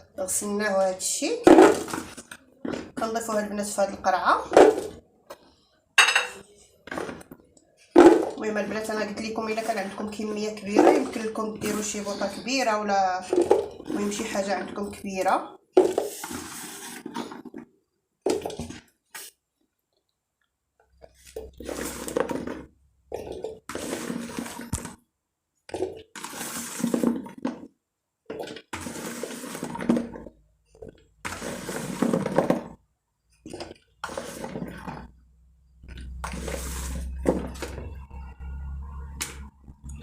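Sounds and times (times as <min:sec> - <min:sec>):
olives rattling into plastic container: 0:01.4 - 0:03.1, 0:21.4 - 0:25.0, 0:28.3 - 0:32.8.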